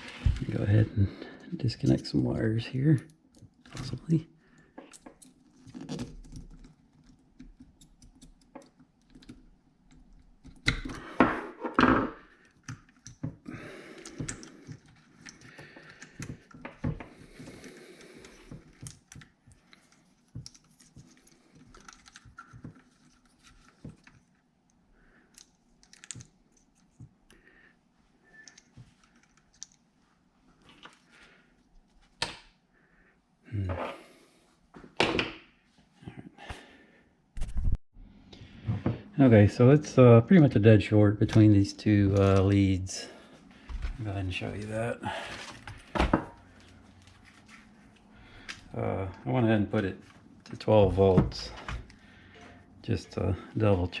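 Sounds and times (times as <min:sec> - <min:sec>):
clicks and taps of small parts: 0:25.3 - 0:27.2.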